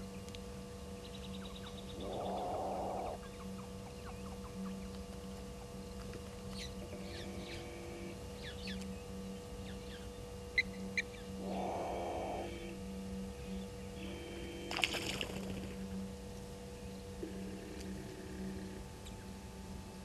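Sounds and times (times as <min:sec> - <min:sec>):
steady low hum: 0:00.0 - 0:20.0
breathy animal noise: 0:02.0 - 0:03.2, 0:11.4 - 0:12.7.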